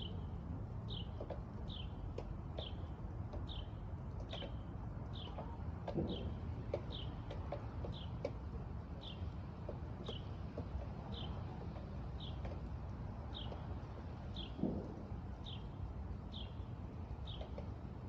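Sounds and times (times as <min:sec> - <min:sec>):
bird chirping: 0:00.0 - 0:08.3, 0:13.3 - 0:17.7
low background noise: 0:00.0 - 0:18.0.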